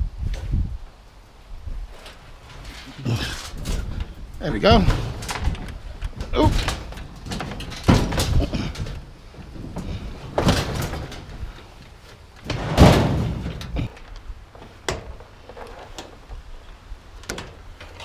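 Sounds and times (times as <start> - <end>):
scrap metal bangs and clanks: 2.4 - 11.8, 12.4 - 13.9.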